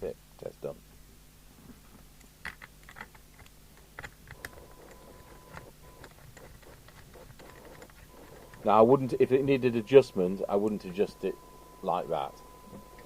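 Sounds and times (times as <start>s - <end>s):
low steady hum: 0.0s - 13.0s
faint steady high tone: 7.4s - 13.0s.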